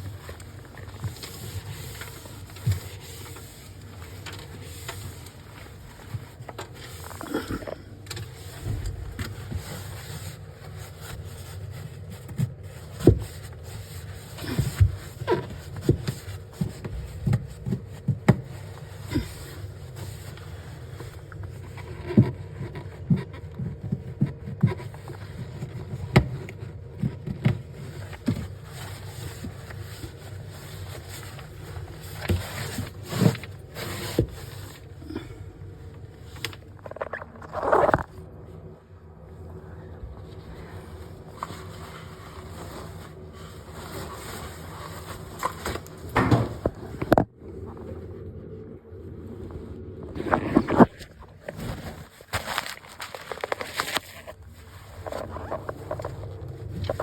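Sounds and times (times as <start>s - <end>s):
steady low hum: 0.0s - 57.0s
containers and shelves clattering: 41.2s - 47.3s.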